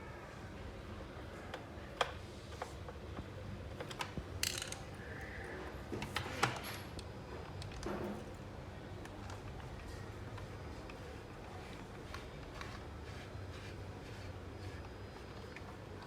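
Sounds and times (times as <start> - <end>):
plastic and metal parts clicking: 3.8 - 4.9.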